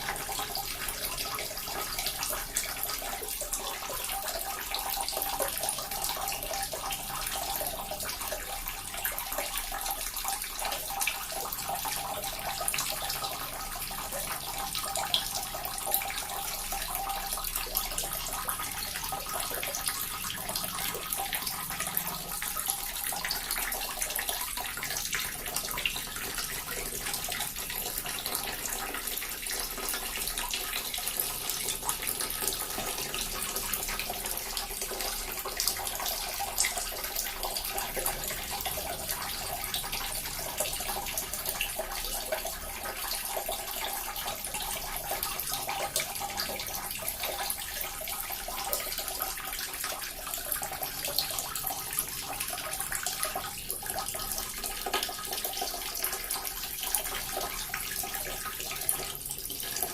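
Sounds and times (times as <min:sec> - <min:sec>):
water fountain splashing: 0:00.0 - 0:59.9.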